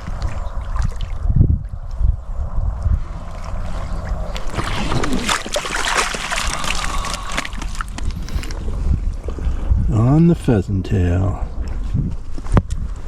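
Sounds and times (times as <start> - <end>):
water splashing in a stream: 0.0 - 1.3, 3.4 - 8.2
low rumble: 0.0 - 10.3.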